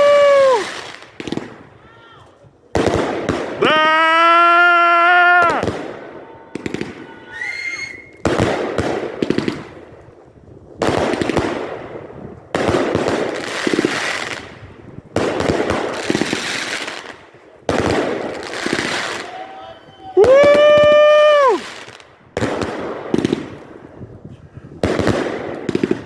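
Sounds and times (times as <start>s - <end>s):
fireworks bangs and crackling: 0.0s - 3.9s, 5.3s - 26.0s.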